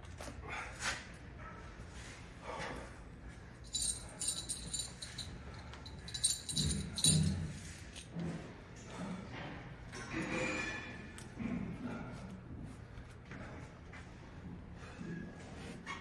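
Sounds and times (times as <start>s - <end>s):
metallic jingling and clinking: 3.6s - 8.1s.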